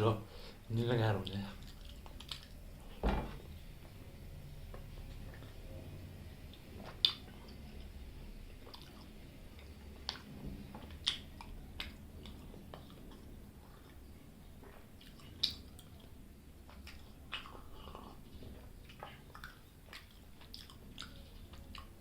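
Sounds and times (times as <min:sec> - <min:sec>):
wet chewing mouth noises: 0:01.2 - 0:02.7, 0:06.8 - 0:08.0, 0:08.6 - 0:22.0.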